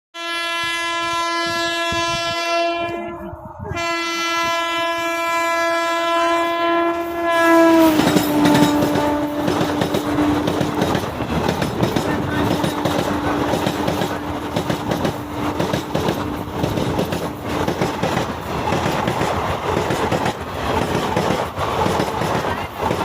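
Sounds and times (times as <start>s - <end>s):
train horn blasts: 0.2s - 10.8s, 12.2s - 14.5s
train wheels clattering on rails: 7.6s - 23.0s.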